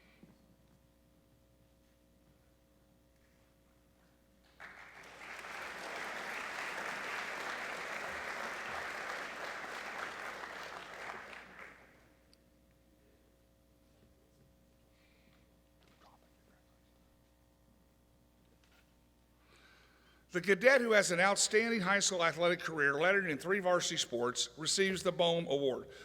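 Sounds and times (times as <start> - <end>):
audience applauding: 4.5 - 12.1.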